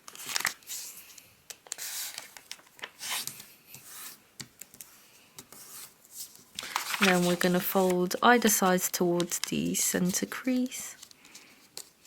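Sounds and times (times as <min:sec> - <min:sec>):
paper rustling while folded: 0:00.0 - 0:04.2, 0:05.6 - 0:12.0
light paper ticks: 0:09.2 - 0:11.9.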